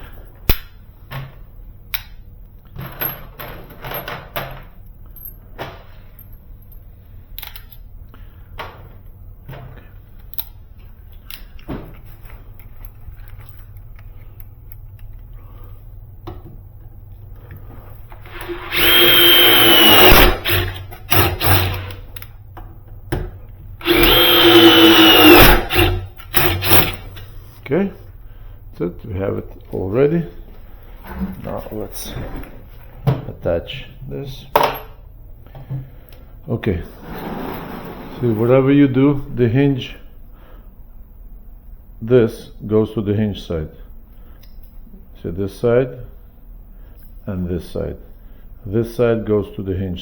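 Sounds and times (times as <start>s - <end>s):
power drill whining: 18.2s - 22.0s, 23.8s - 27.1s
tools and screws clicking: 18.3s - 22.3s, 23.8s - 27.1s.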